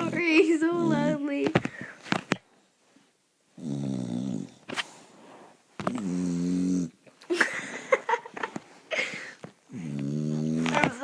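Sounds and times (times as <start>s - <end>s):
dog snoring: 0.0s - 1.3s, 3.5s - 4.7s, 5.8s - 7.0s, 9.7s - 11.0s.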